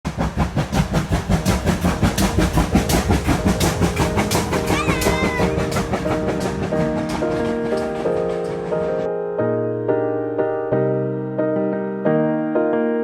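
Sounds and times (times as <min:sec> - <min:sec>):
fast steady drum beat: 0:00.1 - 0:07.1
held piano notes: 0:01.1 - 0:13.0.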